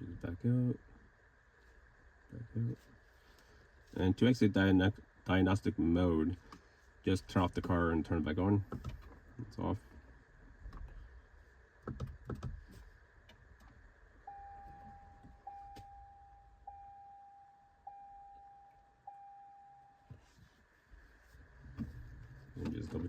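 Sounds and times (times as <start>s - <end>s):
vehicle warning chime: 14.2s - 20.3s.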